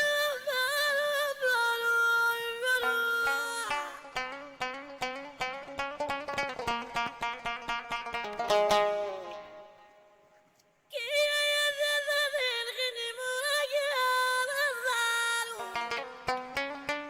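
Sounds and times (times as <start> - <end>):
plucked strings: 2.0 - 10.2, 15.1 - 17.0.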